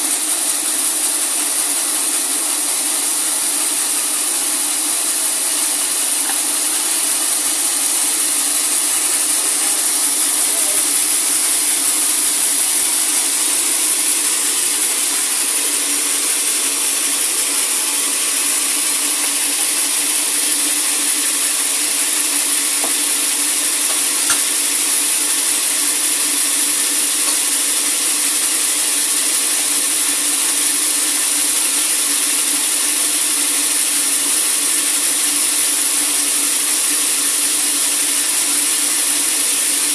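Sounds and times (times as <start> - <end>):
sawmill saw cutting log: 0.0 - 39.9.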